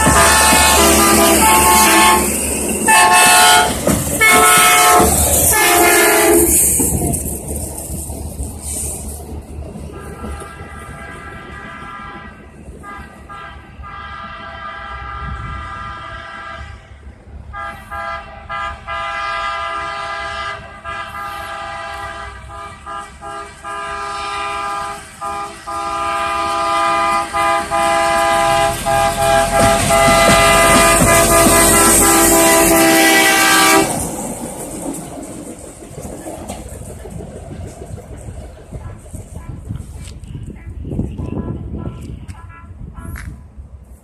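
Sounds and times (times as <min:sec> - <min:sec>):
train air horn blasts: 0:00.0 - 0:06.8, 0:09.9 - 0:34.1, 0:39.4 - 0:43.5.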